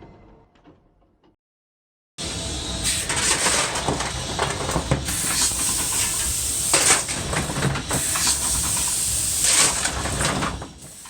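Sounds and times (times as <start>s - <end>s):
steam hissing: 4.6s - 11.0s.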